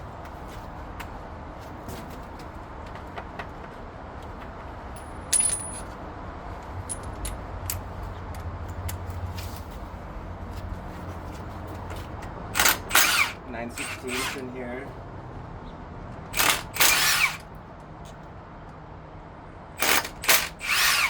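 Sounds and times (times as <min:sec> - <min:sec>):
hand tools clinking on metal: 0:05.0 - 0:06.0, 0:06.8 - 0:07.8.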